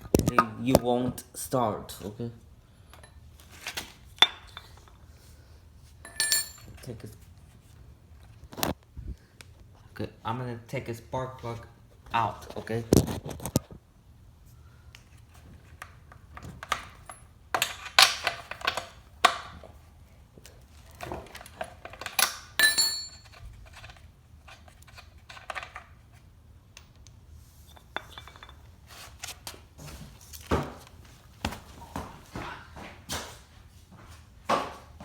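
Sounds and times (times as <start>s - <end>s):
metal hand tools clinking: 6.0s - 6.9s, 21.9s - 23.4s
short metallic ring: 22.6s - 23.3s.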